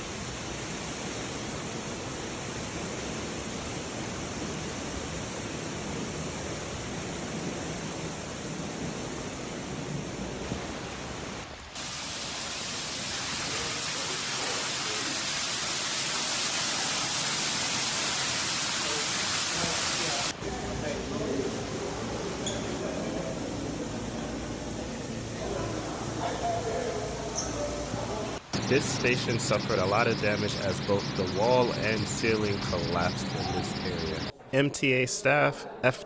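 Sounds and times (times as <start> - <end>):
floodwater rushing: 10.4 - 20.4, 28.4 - 34.3.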